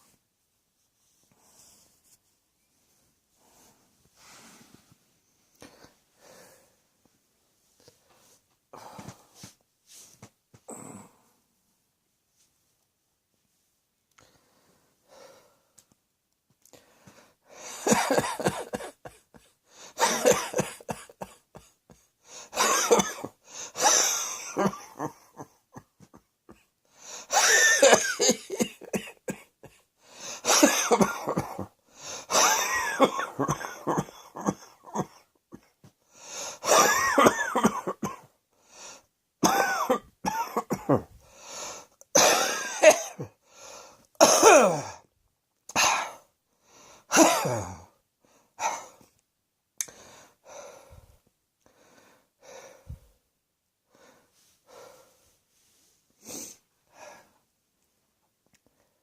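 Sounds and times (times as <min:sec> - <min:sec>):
person coughing: 0:17.8 - 0:26.7, 0:27.3 - 0:29.8, 0:30.4 - 0:35.7, 0:36.6 - 0:38.3, 0:39.4 - 0:41.2, 0:42.2 - 0:43.4, 0:44.2 - 0:45.0, 0:45.7 - 0:46.2, 0:47.1 - 0:47.9.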